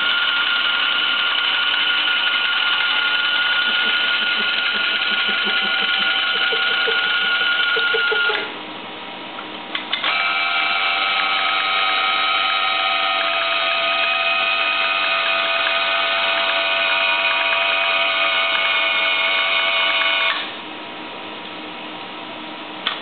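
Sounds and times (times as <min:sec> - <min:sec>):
high-pitched electronic whine: 0:03.4 - 0:08.6.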